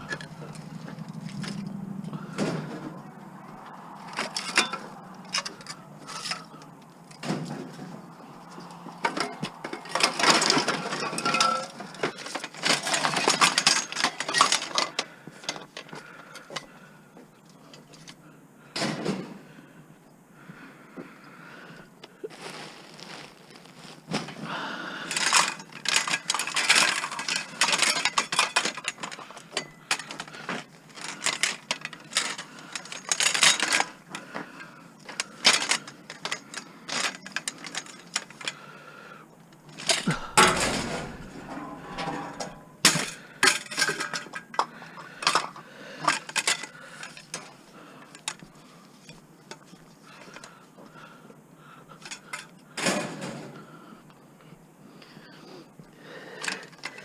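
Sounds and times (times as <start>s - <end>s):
metal clanks and rattles: 4.0s - 16.7s, 25.1s - 34.4s, 39.7s - 50.5s
heavy metal crash: 40.0s - 42.9s.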